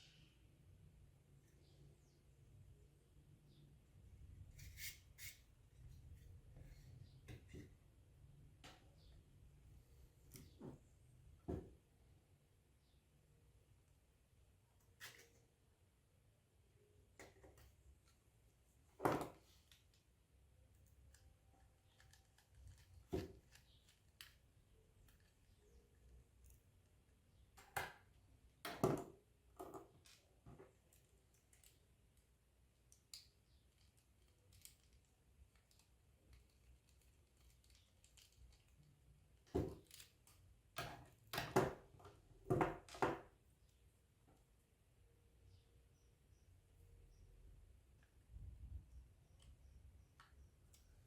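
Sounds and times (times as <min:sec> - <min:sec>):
tools clicking and tapping: 0:39.5 - 0:43.3.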